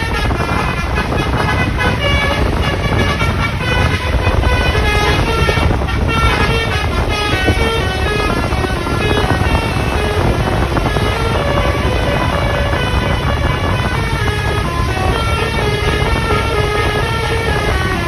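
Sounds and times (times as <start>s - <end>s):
bus horn playing a tune: 0.0s - 18.0s
low rumble: 0.0s - 18.0s.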